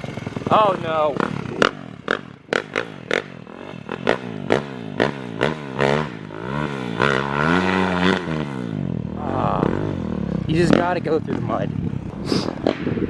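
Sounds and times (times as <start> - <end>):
dirt bike engine revving: 0.0 - 13.0.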